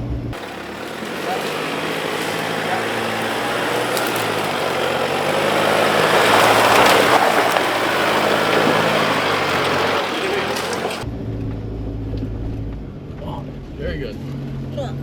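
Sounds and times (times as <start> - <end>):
truck engine running under load: 0.4 - 11.0.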